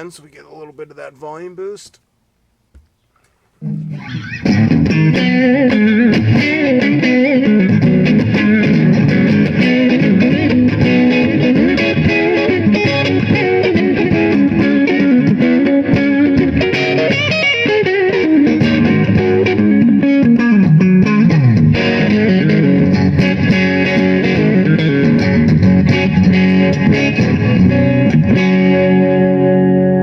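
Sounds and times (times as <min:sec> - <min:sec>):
crunchy electric guitar playing: 0:03.6 - 0:30.0.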